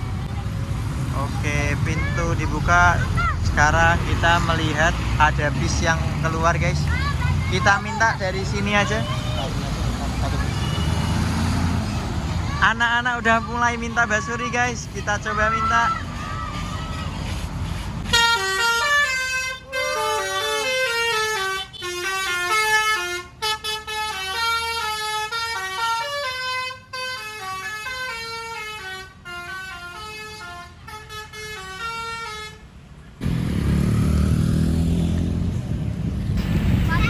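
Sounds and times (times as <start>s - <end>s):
bus horn playing a melody: 18.1s - 32.7s.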